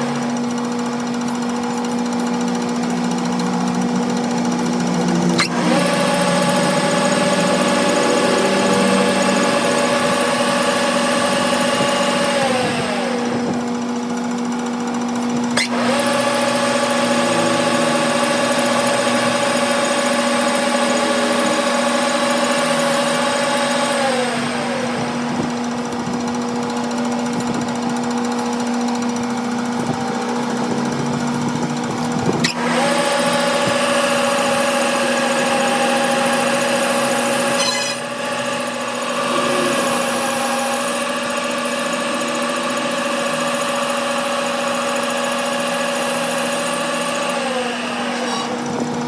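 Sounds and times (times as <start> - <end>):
workshop machine humming and whining: 0.0 - 49.0.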